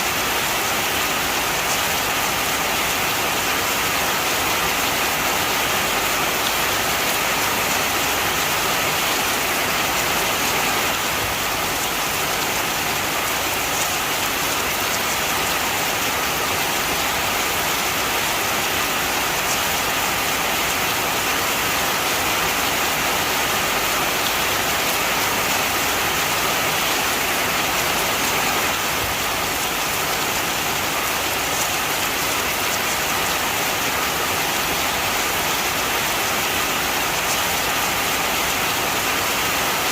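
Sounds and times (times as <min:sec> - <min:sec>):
heavy rain pattering: 0:00.0 - 0:39.9.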